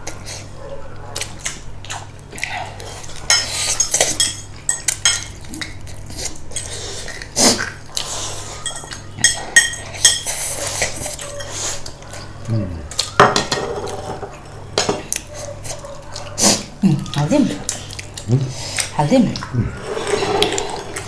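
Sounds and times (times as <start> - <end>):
cutlery clinking against dishes: 3.1 - 5.7, 8.5 - 11.9, 13.1 - 15.2.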